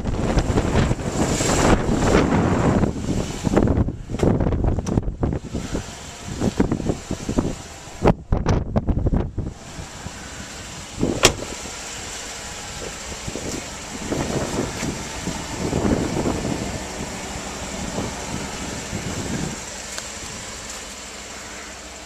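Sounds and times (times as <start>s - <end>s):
car engine idling: 0.0s - 22.0s.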